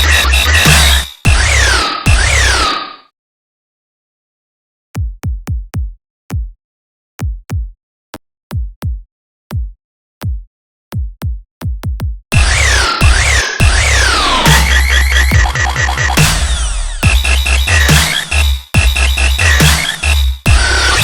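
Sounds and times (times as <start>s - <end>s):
electronic kick drum: 0.0s - 2.6s, 5.0s - 6.6s, 7.2s - 7.8s, 8.5s - 21.0s
dubstep track with gliding synths: 0.0s - 3.0s, 12.4s - 21.0s.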